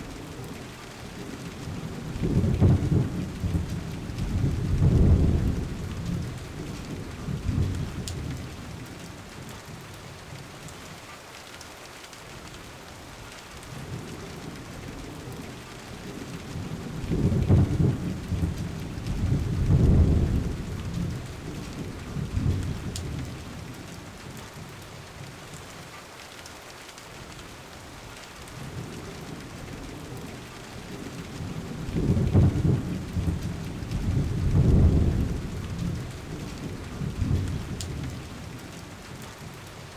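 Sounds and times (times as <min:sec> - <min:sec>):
steady rain: 0:00.0 - 0:39.9
thunder rumbling: 0:01.6 - 0:08.6, 0:16.5 - 0:23.7, 0:28.6 - 0:38.7.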